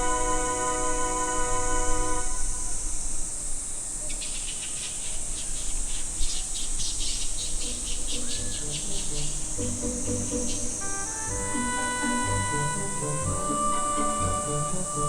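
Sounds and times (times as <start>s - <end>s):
cicadas hissing: 0.0s - 15.0s
pulsed cicada call: 0.0s - 15.0s
rising-and-falling insect call: 0.0s - 15.0s.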